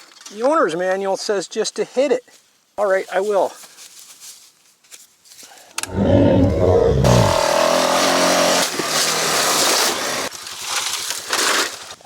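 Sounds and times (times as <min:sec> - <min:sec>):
atv engine revving: 0:05.9 - 0:10.3.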